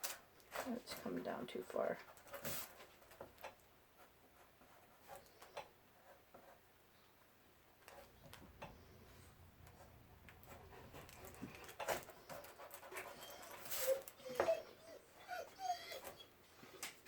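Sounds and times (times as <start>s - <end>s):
dog panting: 10.4s - 16.3s.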